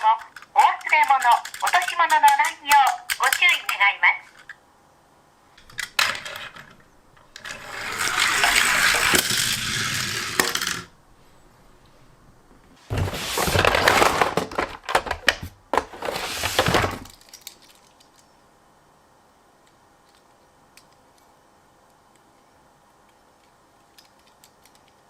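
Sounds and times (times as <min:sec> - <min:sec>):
sharp clicks: 0:00.1 - 0:03.8
toy cars rolling on a track: 0:07.4 - 0:10.9.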